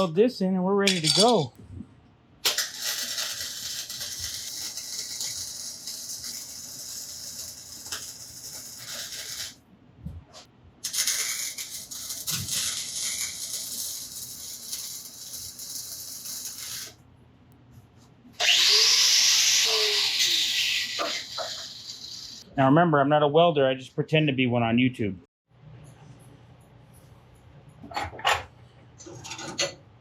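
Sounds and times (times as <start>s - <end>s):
welding arc crackling and hissing: 2.5s - 9.6s, 10.8s - 17.0s, 18.4s - 22.4s
loud hissing: 18.4s - 22.4s.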